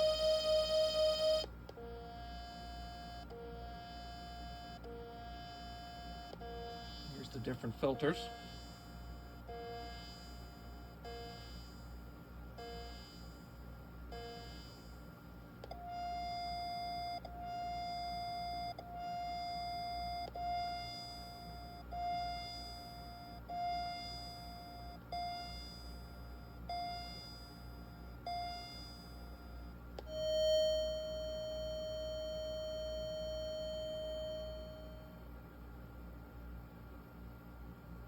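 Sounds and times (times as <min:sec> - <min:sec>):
electronic test tones: 0:00.0 - 0:11.8, 0:30.1 - 0:35.2.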